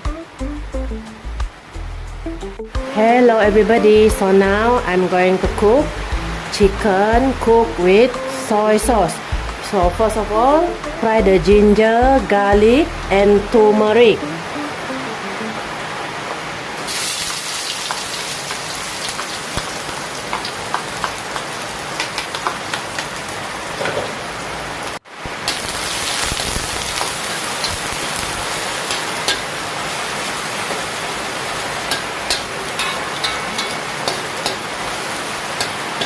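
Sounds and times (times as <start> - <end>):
food sizzling in hot oil: 0.6 - 11.2, 16.8 - 23.4, 25.4 - 36.0.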